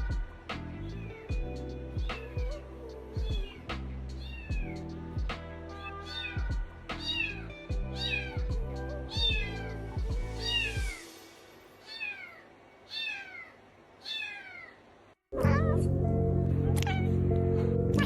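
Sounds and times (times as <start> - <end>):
music with bass beat: 0.0 - 11.0
cat meowing: 4.2 - 4.8, 5.8 - 11.0, 11.8 - 14.8, 16.6 - 17.2.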